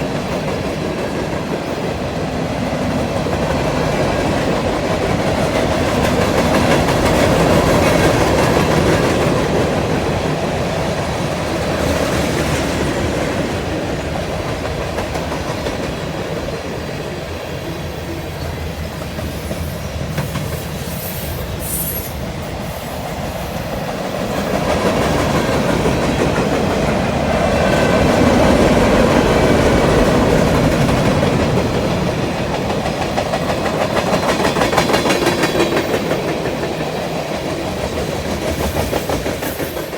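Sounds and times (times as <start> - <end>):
freight train wheels rumbling: 0.0 - 39.9
high-pitched wheel squeal: 20.4 - 22.2.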